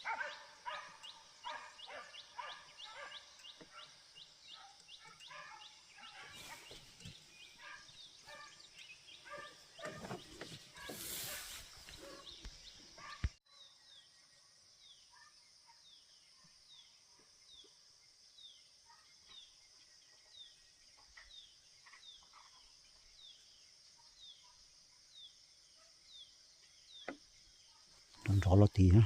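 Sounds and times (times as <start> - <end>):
dogs and boar fighting: 4.5 - 8.6, 9.2 - 12.4.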